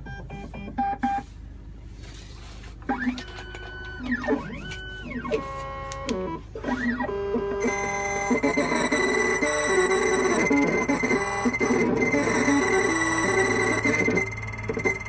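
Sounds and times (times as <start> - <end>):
key machine motors whining: 7.6 - 15.0
short beeps: 7.6 - 15.0.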